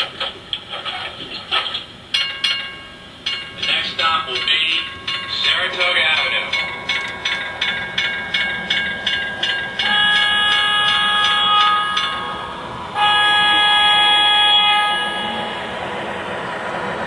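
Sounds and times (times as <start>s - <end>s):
train bell ringing: 2.1s - 16.5s
train horn blasts: 9.8s - 16.0s.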